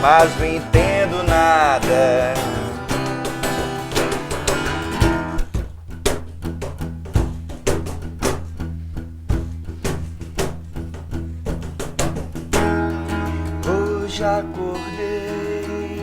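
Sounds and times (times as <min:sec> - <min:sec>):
bass line: 0:00.0 - 0:05.9
electric guitars: 0:00.0 - 0:08.7, 0:11.5 - 0:16.0
drum kit beat: 0:00.0 - 0:14.3.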